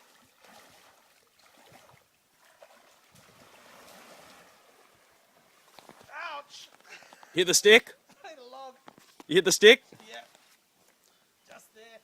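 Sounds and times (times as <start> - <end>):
soft water drips: 0.0 - 6.0
water trickling and lapping: 0.0 - 7.3, 9.8 - 11.5.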